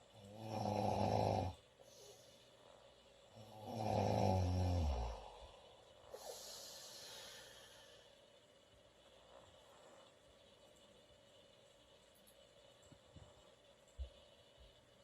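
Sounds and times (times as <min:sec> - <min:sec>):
quiet breathing: 0:00.0 - 0:10.2
woman snoring loudly: 0:00.2 - 0:02.1, 0:03.3 - 0:05.5.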